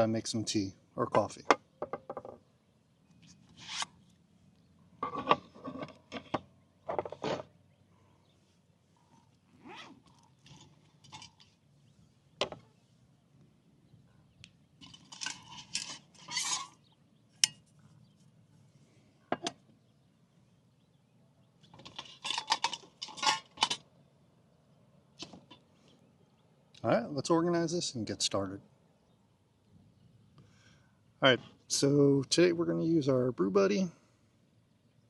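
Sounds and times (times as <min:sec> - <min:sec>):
cooking gear rustling and clattering: 0:05.0 - 0:07.6, 0:09.0 - 0:12.7, 0:14.8 - 0:17.8, 0:21.7 - 0:23.9.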